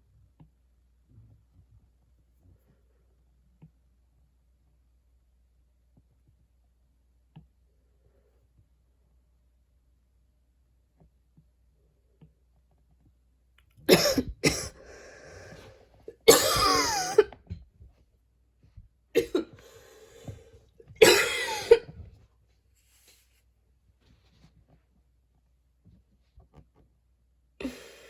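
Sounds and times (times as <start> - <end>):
person coughing hard: 13.9 - 17.3, 19.2 - 19.8, 21.0 - 21.9
breathing: 14.8 - 16.0, 19.5 - 20.8, 27.6 - 28.0.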